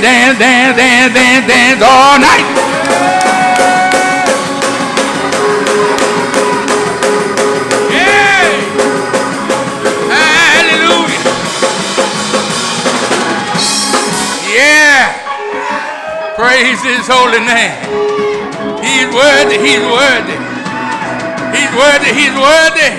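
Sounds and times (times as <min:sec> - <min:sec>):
person singing: 0:00.0 - 0:04.6, 0:07.8 - 0:09.0, 0:10.0 - 0:11.5, 0:18.0 - 0:20.6
drum kit beat: 0:00.0 - 0:15.6, 0:17.4 - 0:22.9
keyboard chords: 0:00.0 - 0:22.9.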